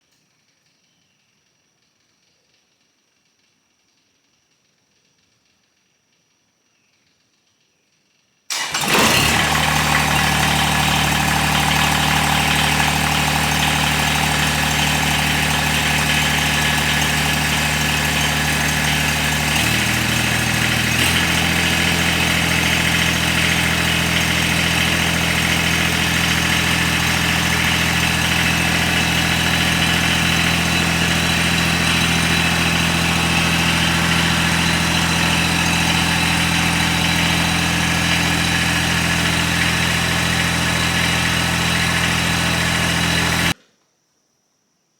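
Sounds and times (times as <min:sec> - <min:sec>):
engine idling: 0:08.5 - 0:43.6.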